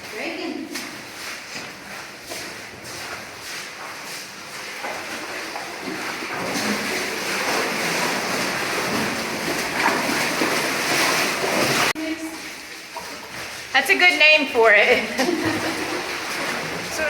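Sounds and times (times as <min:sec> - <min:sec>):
water rushing and splashing: 0:00.0 - 0:17.0.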